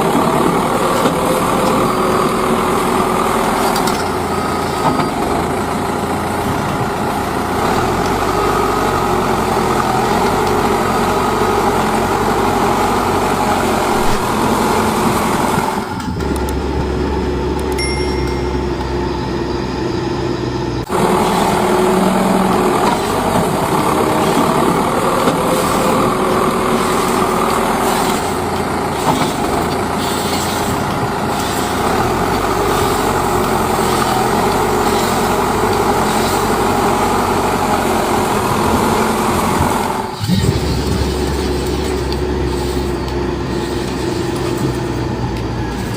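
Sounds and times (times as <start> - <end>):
toy truck motor and gears: 20.8 - 45.9.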